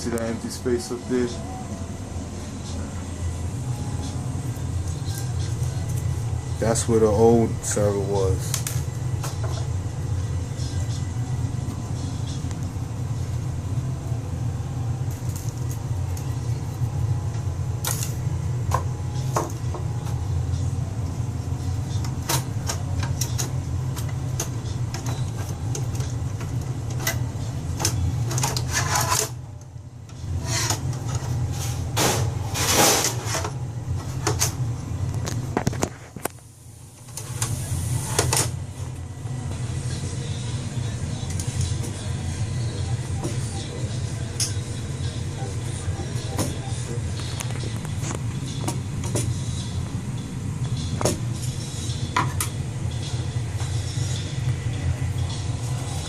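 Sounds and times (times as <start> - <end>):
low machine hum: 0.0 - 56.0.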